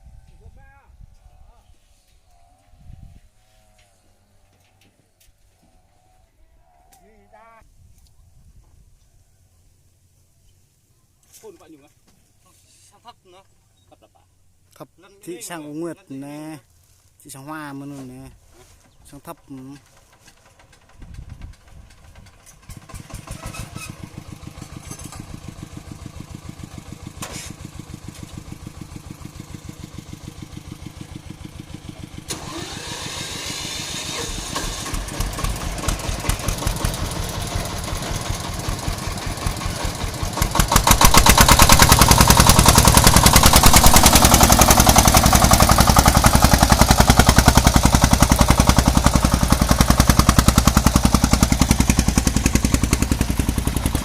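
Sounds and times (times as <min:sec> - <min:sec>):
small farm engine running: 0:18.1 - 0:54.0.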